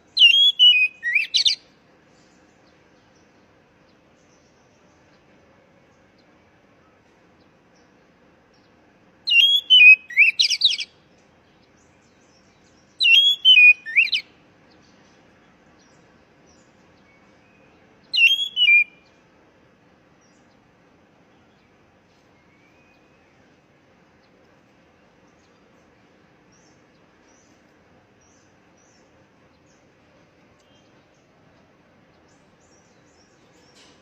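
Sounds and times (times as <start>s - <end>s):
bird whistling song: 0.1s - 1.7s, 9.2s - 11.0s, 12.0s - 14.3s, 15.8s - 19.2s, 22.4s - 23.5s.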